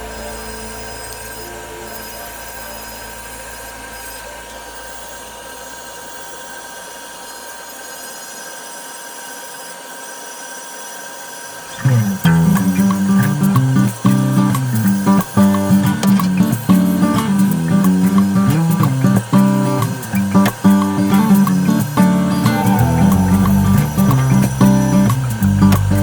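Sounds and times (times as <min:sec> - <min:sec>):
music: 0:00.0 - 0:05.0, 0:11.8 - 0:26.0.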